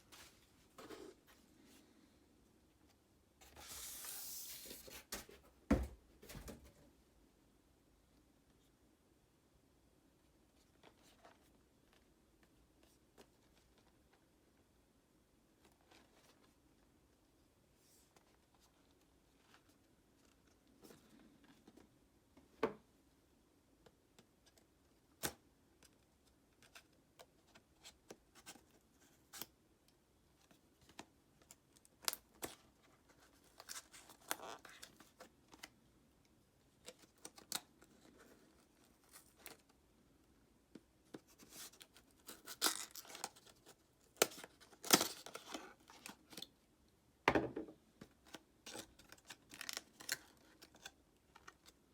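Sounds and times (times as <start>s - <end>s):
packaging rustling and tearing: 41.5s - 46.5s.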